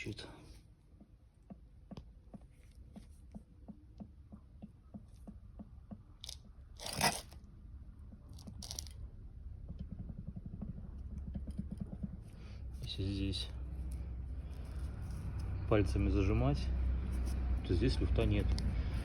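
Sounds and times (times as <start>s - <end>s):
shock absorber knocking: 0.9s - 6.8s, 8.0s - 13.0s.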